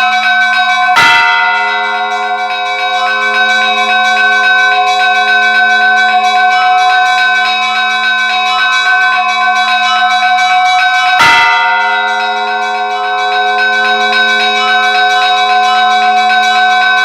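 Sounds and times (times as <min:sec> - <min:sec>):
church bells pealing: 0:00.0 - 0:17.0
deep heavy bell stroke: 0:01.0 - 0:08.0, 0:11.2 - 0:17.0.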